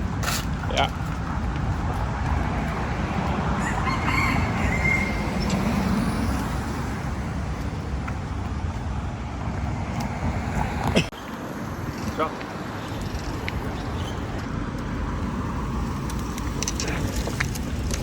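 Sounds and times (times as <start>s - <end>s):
rooster crowing: 3.4s - 5.9s.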